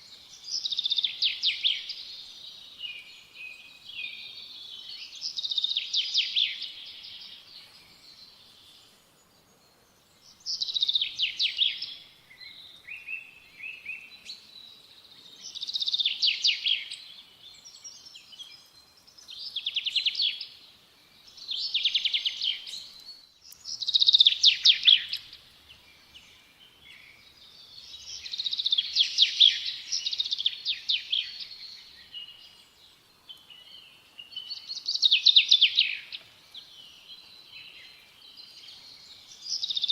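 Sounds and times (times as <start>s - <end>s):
songbird trilling: 23.5s - 25.4s.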